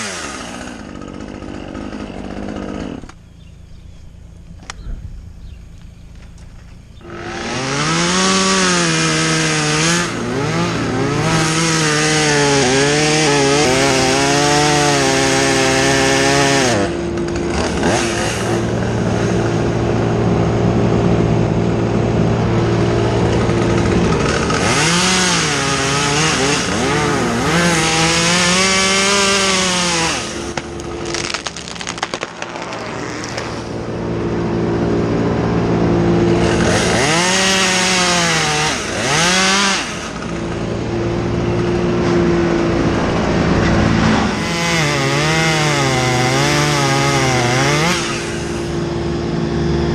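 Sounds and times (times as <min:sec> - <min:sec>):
chainsaw cutting wood: 0:00.0 - 0:03.8, 0:06.2 - 0:49.9
low engine hum: 0:02.0 - 0:08.7, 0:16.9 - 0:25.6, 0:30.4 - 0:37.1, 0:39.9 - 0:49.9.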